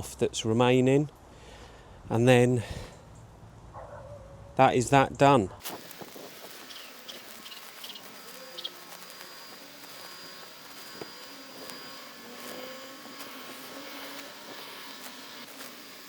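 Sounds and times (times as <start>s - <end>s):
quiet hiss: 5.6s - 16.0s
thin steady high tone: 5.8s - 16.0s.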